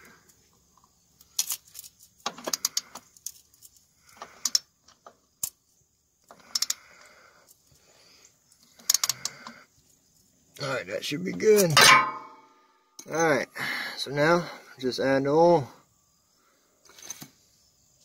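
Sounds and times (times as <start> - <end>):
ratchet clicking: 6.3 - 6.8.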